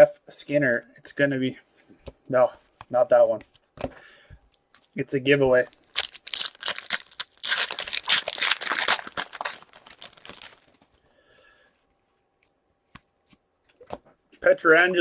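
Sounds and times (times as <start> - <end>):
wrapper crinkling and tearing: 5.7 - 11.0.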